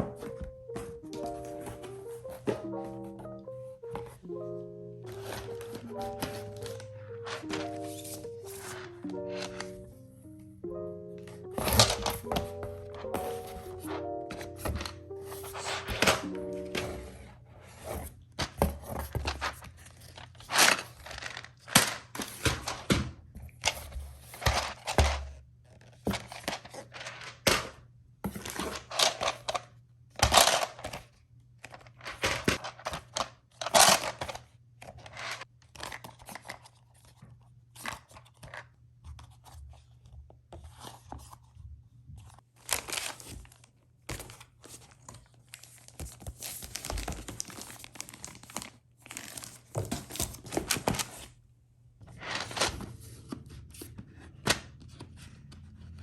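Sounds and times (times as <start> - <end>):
plastic packaging crinkling: 42.6 - 51.3.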